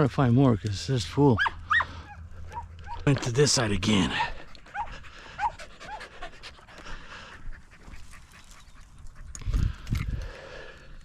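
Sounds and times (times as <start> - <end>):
dog panting: 1.8 - 9.8.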